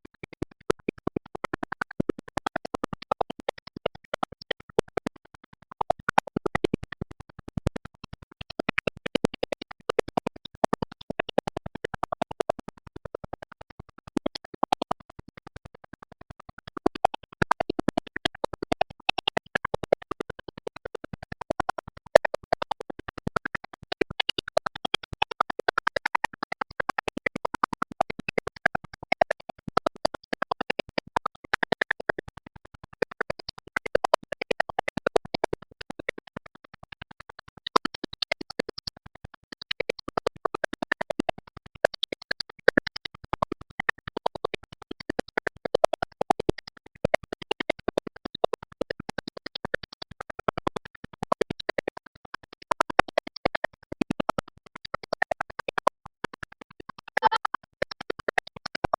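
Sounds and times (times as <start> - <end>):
music with stuttering pulse: 52.7 - 58.9.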